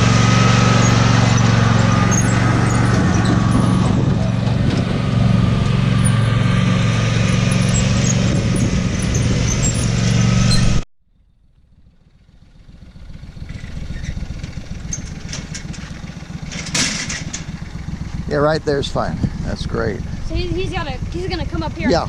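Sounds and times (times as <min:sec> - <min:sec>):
outdoor background noise: 0:00.0 - 0:22.0
vehicle engine running: 0:00.0 - 0:22.0.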